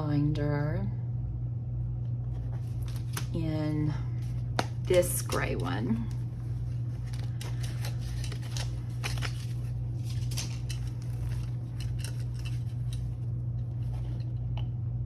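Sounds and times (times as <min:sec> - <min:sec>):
steady low hum: 0:00.0 - 0:15.0
paper and plastic rustling: 0:02.4 - 0:03.4, 0:04.2 - 0:13.2.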